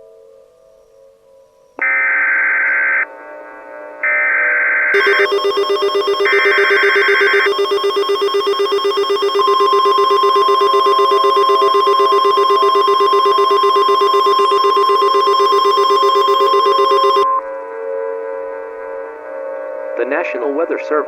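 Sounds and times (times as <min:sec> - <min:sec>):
digital header bursts: 0:05.0 - 0:17.2
pulsing electronic alert tone: 0:05.0 - 0:17.3
steady high tone: 0:05.0 - 0:17.3.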